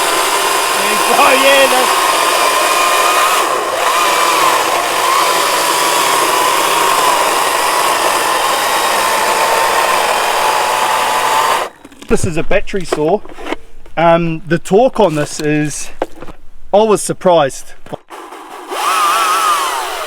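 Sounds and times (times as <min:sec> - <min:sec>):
battery chainsaw whining: 0:00.0 - 0:12.1, 0:18.0 - 0:20.0.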